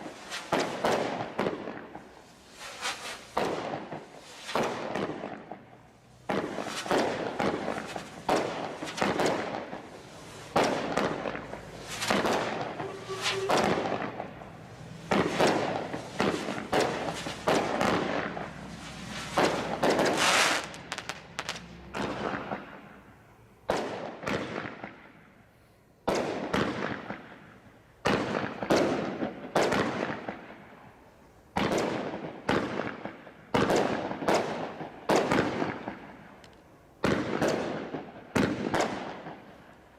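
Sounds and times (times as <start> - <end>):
fireworks banging: 0.0 - 25.4, 26.0 - 30.8, 31.5 - 39.9.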